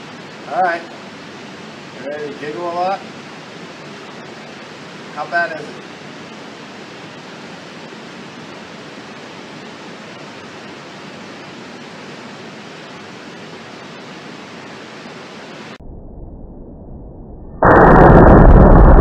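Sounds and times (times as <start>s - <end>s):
steady hiss: 0.0s - 15.8s
loud sustained low noise: 15.5s - 19.0s
low rumble: 15.8s - 19.0s.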